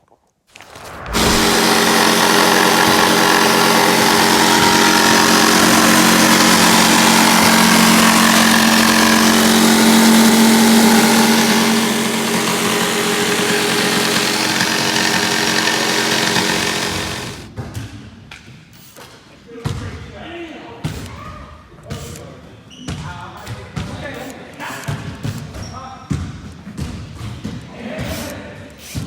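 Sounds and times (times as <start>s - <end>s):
electric power tool motor running: 1.1s - 17.5s.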